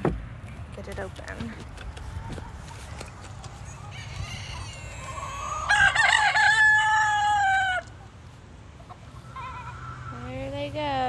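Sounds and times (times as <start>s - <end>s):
faint chicken calls: 1.8s - 10.6s
rooster crowing: 2.4s - 8.0s.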